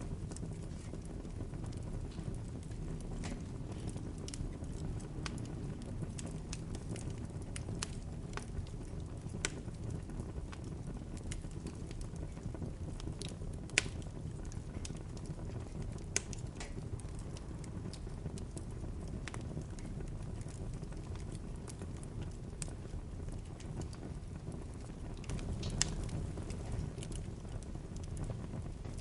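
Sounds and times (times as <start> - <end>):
bonfire crackling and popping: 0.0 - 29.0.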